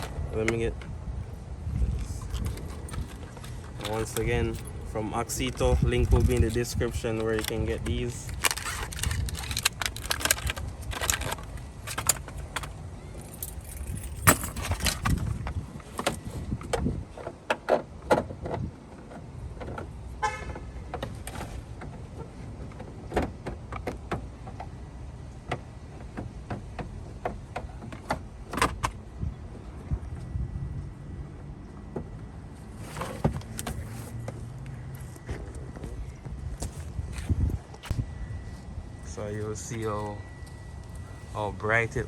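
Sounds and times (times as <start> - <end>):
low outdoor rumble: 0.0 - 17.2, 18.3 - 42.0
plastic parts clicking and rattling: 2.2 - 16.3.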